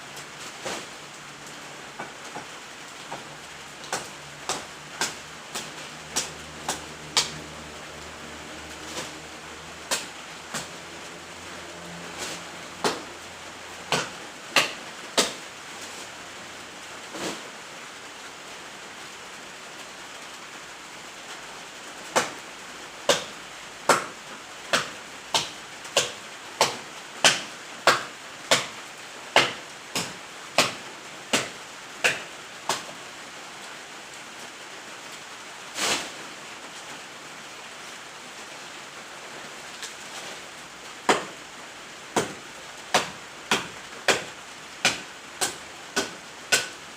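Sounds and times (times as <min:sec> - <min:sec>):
steady hiss: 0:00.0 - 0:46.9
axe chopping wood: 0:03.9 - 0:07.4, 0:09.9 - 0:10.7, 0:12.2 - 0:13.0, 0:13.9 - 0:15.4, 0:22.2 - 0:22.4, 0:23.1 - 0:24.1, 0:24.7 - 0:28.7, 0:29.4 - 0:32.8, 0:41.1 - 0:41.3, 0:42.2 - 0:46.7.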